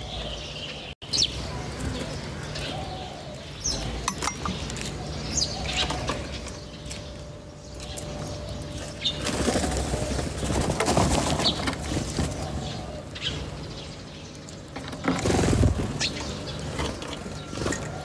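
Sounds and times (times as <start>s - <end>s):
small birds chirping: 0.0s - 18.0s
loud rustling noise: 8.8s - 12.9s, 14.9s - 18.0s.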